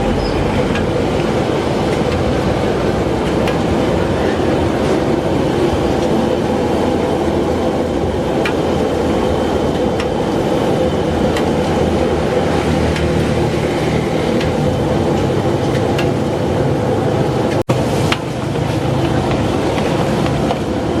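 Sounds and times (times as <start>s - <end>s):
gas burner roaring: 0.0s - 21.0s.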